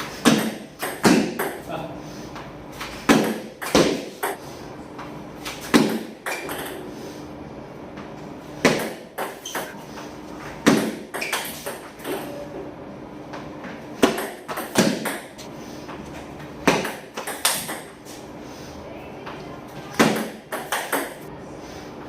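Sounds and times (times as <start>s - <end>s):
table tennis ball hits: 0.2s - 1.7s, 2.8s - 4.4s, 5.5s - 6.8s, 8.6s - 9.8s, 10.6s - 12.3s, 14.0s - 15.4s, 16.6s - 18.0s, 19.9s - 21.3s.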